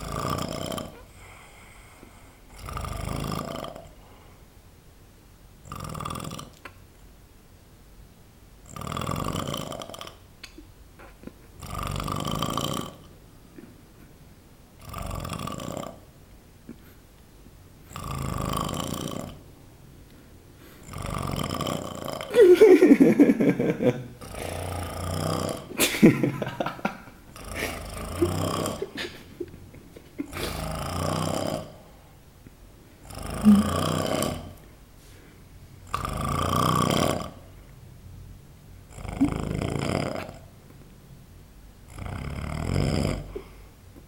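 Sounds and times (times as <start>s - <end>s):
loud snoring: 0.0s - 1.8s, 2.4s - 4.0s, 5.6s - 6.6s, 8.6s - 10.2s, 11.6s - 13.1s, 14.8s - 16.1s, 17.9s - 19.4s, 20.8s - 22.5s, 23.4s - 29.2s, 30.2s - 32.0s, 33.0s - 34.6s, 35.9s - 37.5s, 38.9s - 40.5s, 41.9s - 43.5s
quiet breaths: 0.0s - 4.7s, 16.6s - 19.4s, 20.0s - 22.3s, 27.3s - 36.6s, 42.0s - 44.0s.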